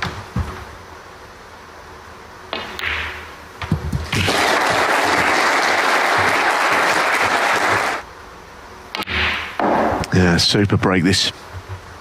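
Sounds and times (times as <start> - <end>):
crowd applauding: 4.1 - 8.0.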